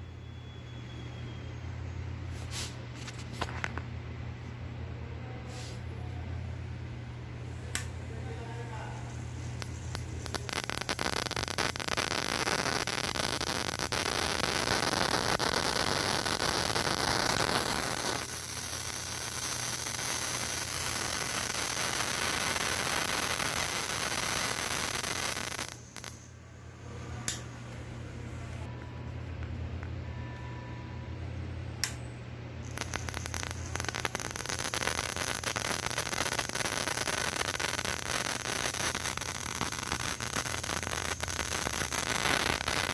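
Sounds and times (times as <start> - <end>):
steady low hum: 0.0 - 42.9
loud steady hiss: 8.7 - 26.3, 32.7 - 42.9.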